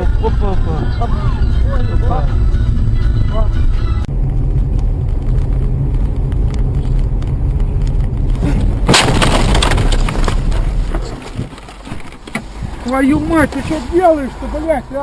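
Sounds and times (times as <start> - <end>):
car road and engine rumble: 0.0 - 15.0
loud collision impact: 8.8 - 10.6.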